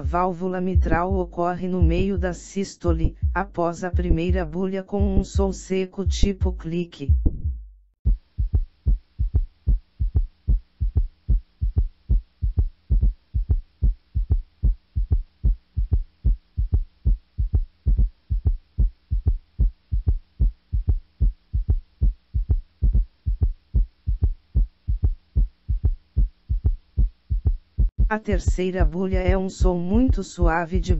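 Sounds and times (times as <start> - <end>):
heart beating: 0.0 - 30.9
faint steady hum: 8.1 - 30.9.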